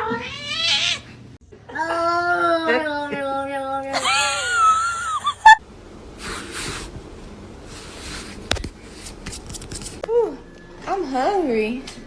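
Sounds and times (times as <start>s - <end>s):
cat meowing: 0.0s - 1.1s.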